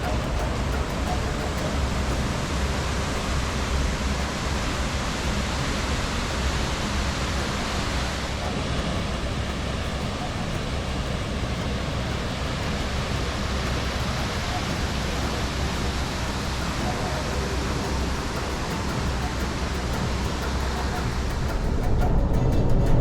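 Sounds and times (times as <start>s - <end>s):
waterfall rushing: 0.0s - 23.0s.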